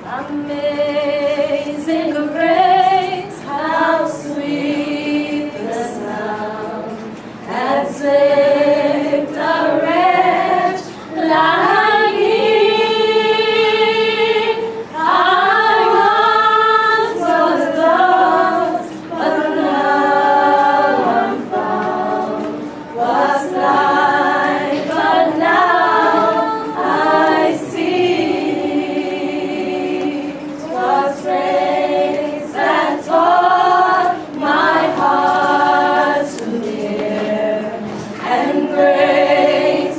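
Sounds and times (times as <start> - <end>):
women singing together: 0.0 - 39.9.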